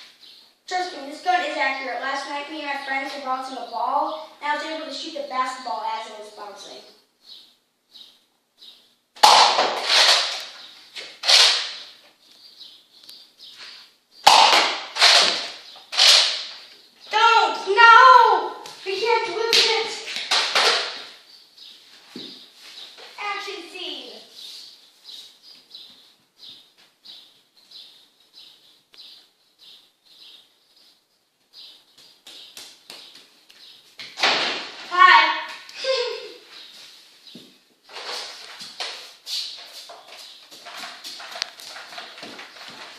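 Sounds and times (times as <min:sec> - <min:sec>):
bird chirping: 0:00.0 - 0:09.6, 0:10.3 - 0:20.1, 0:20.9 - 0:34.0
toy blaster firing pops: 0:09.2 - 0:10.5, 0:14.2 - 0:16.5.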